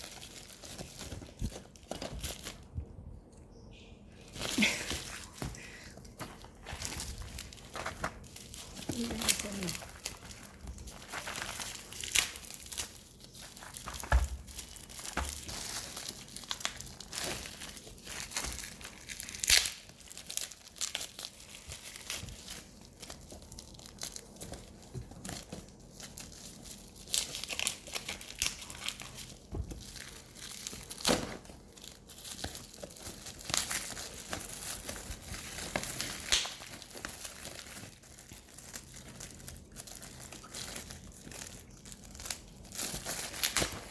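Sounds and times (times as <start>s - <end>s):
packaging crinkling and tearing: 0.0s - 2.8s, 4.2s - 43.9s.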